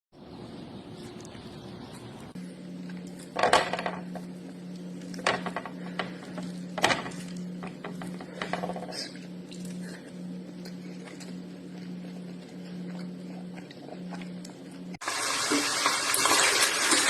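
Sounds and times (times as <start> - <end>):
steady low hum: 0.2 - 15.0.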